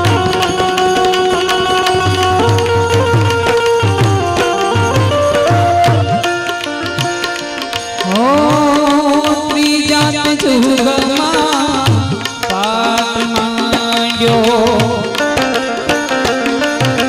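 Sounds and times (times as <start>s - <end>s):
long held sliding melodic notes: 0.0s - 9.2s
hand drum beat: 0.0s - 17.0s.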